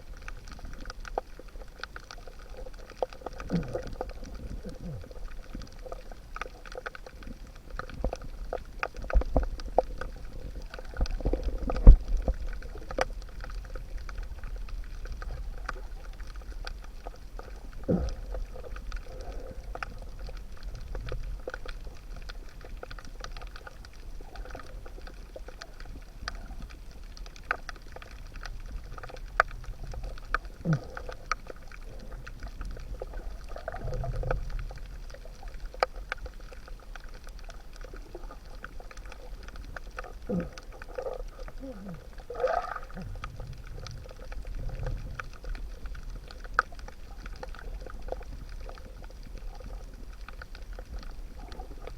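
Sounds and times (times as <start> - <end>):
underwater low rumble: 0.0 - 51.9
gurgling sliding sounds: 1.6 - 14.2, 17.2 - 22.9, 28.8 - 51.9.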